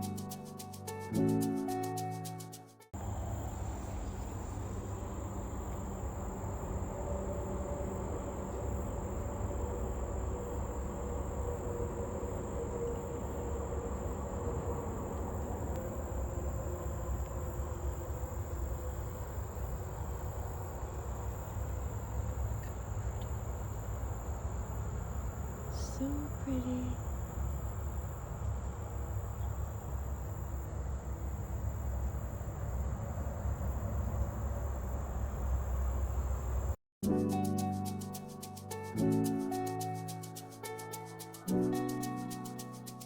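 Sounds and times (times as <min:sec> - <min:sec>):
crickets trilling: 0:03.0 - 0:36.8.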